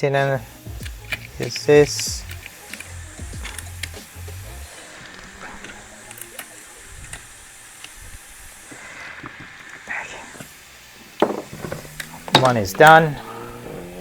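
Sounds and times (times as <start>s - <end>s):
hand tool clicks and scrapes: 0.0s - 10.6s
scraping hiss: 0.0s - 14.0s.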